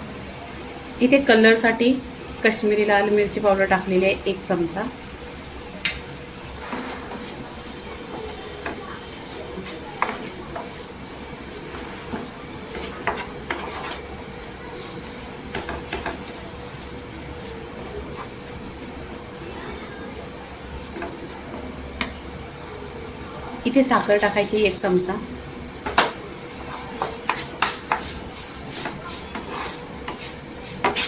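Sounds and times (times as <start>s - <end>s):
apple sizzling in oil: 0.0s - 31.0s
spoon knocking against pan: 25.8s - 26.2s.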